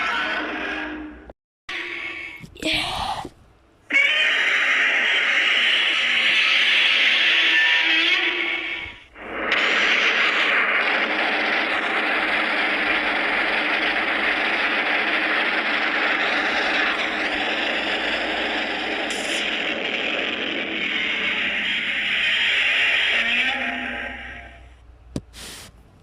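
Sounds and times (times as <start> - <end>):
steady rushing hiss: 25.2 - 25.8.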